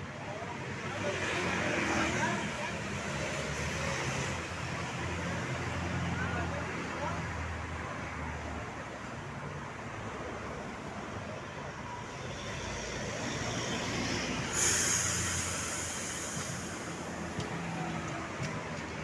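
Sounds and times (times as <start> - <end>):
bus engine running: 8.6 - 19.0
loud air brake hiss: 12.3 - 18.0.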